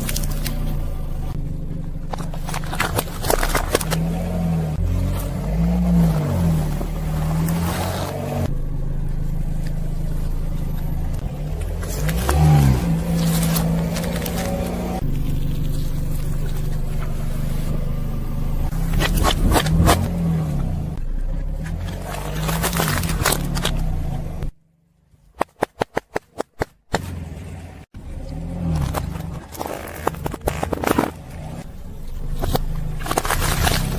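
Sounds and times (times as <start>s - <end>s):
car engine running: 0.0s - 25.3s
tyre crunching over objects: 11.5s - 17.8s, 21.4s - 23.8s, 32.3s - 33.9s.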